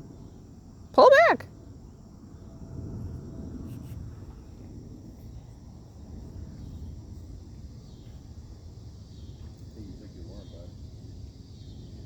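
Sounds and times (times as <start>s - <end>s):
insects trilling faintly: 0.0s - 12.0s
steady low rumble: 1.6s - 12.0s.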